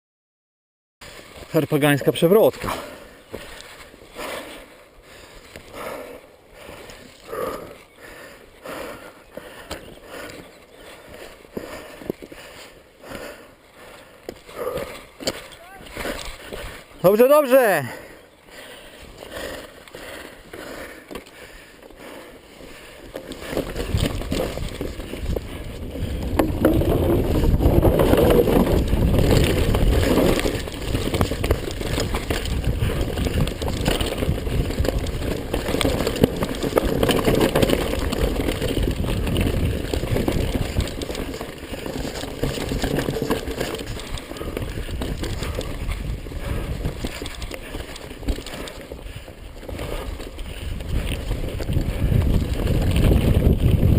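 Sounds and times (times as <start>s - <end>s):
bike rattling: 1.0s - 53.9s
bike tyres rumbling on dirt: 1.0s - 53.9s
wind buffeting microphone: 23.4s - 53.9s.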